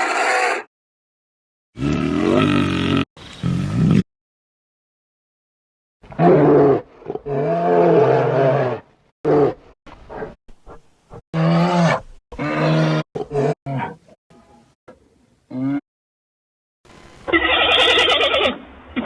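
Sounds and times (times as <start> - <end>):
big cat roaring: 1.8 - 3.0, 6.1 - 9.6.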